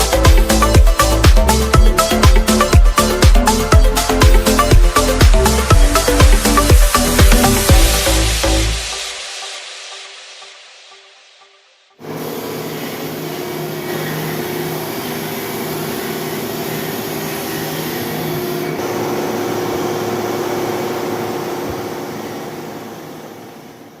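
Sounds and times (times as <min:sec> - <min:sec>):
mechanical running hum: 0:12.0 - 0:24.0.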